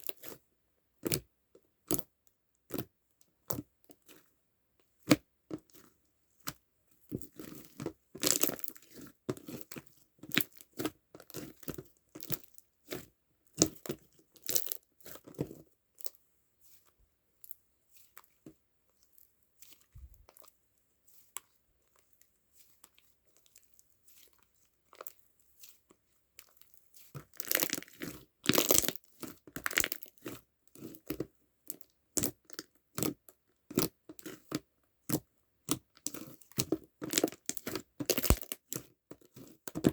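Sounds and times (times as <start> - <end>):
slime crackling and popping: 27.3 - 30.9, 36.1 - 38.8.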